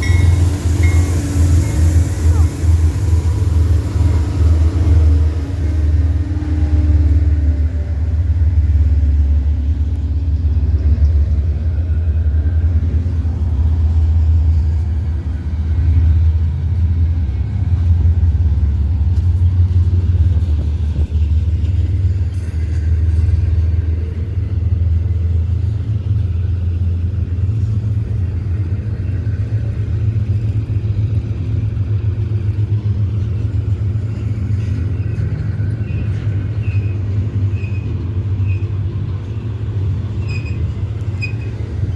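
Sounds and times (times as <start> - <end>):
diesel locomotive rumbling: 0.0 - 41.9.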